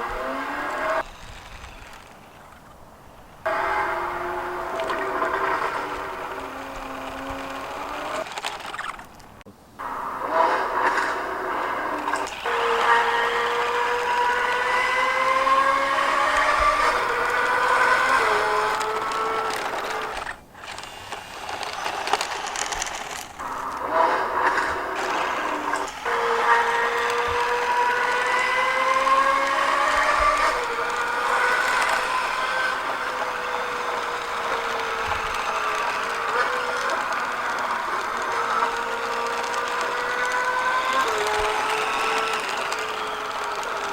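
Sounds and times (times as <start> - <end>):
car engine whine: 0.0 - 43.9.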